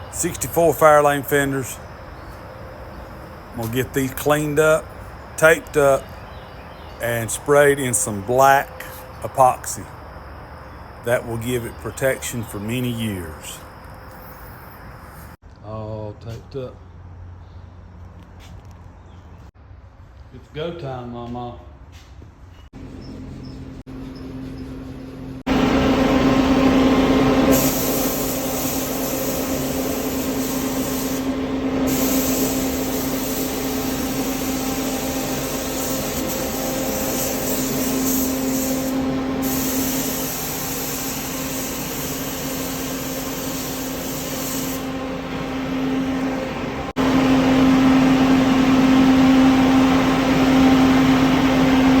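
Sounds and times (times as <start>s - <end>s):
machine hum: 22.8s - 52.0s
spray gun hissing: 27.4s - 46.5s.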